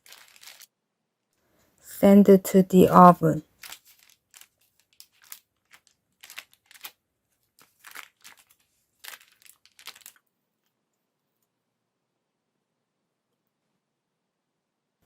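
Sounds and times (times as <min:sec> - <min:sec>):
crinkling and rustling: 0:00.0 - 0:00.7, 0:03.4 - 0:10.8.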